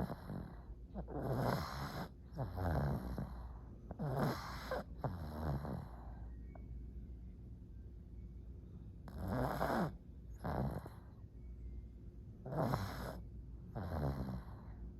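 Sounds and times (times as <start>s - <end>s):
dog snoring: 0.0s - 6.3s, 9.0s - 11.2s, 12.4s - 14.8s.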